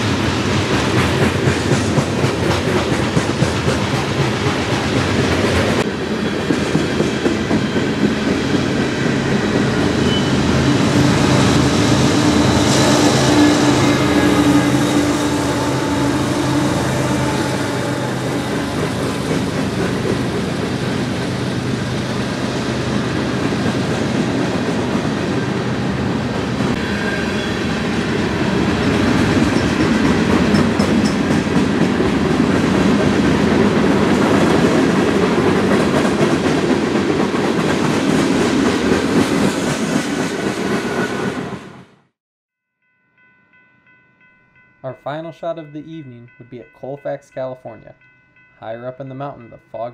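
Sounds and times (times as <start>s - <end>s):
diesel locomotive engines humming: 0.0s - 39.6s
freight cars rolling past: 3.7s - 41.8s.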